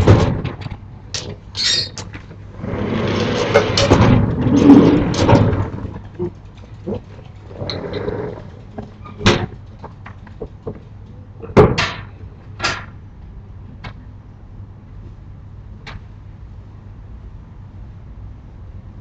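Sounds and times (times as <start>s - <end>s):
door banging and rattling: 0.0s - 6.3s, 9.0s - 10.9s, 11.5s - 12.9s.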